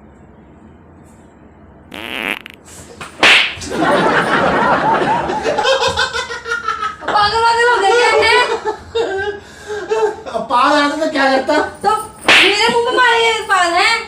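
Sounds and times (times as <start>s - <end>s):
loud fart: 1.9s - 2.7s
laughter: 3.6s - 10.5s.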